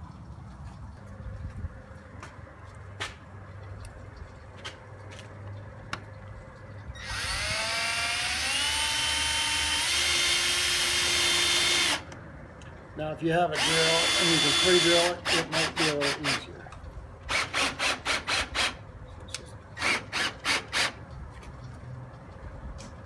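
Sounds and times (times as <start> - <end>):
cordless drill driving screw: 7.0 - 12.2, 13.6 - 16.5, 17.3 - 18.8, 19.8 - 21.0.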